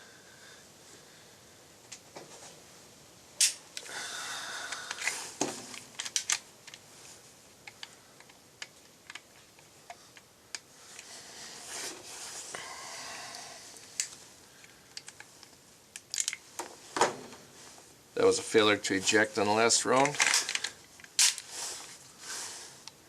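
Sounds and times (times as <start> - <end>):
pistol clicking and rattling: 5.8 - 6.8
rustling: 10.8 - 12.6, 13.8 - 22.8
sharp crack: 20.0 - 21.5.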